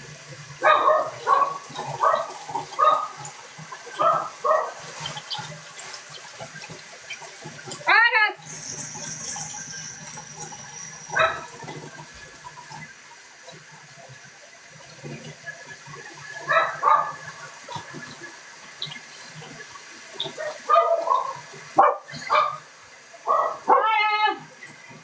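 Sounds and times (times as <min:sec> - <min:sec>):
dog barking: 0:00.6 - 0:05.0, 0:11.1 - 0:11.6, 0:16.4 - 0:17.4, 0:20.3 - 0:24.1.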